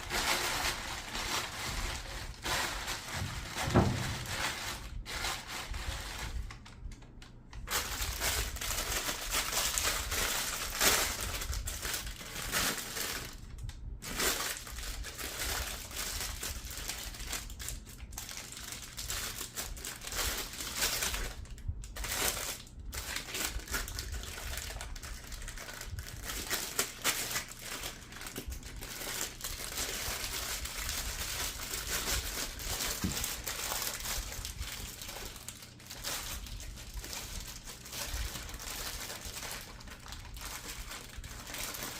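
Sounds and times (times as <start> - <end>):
faint steady hum: 0.0 - 41.9.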